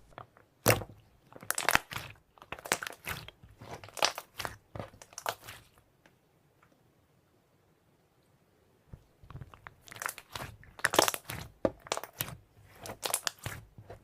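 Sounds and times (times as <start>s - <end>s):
slime squishing: 0.0s - 5.8s, 9.0s - 14.0s.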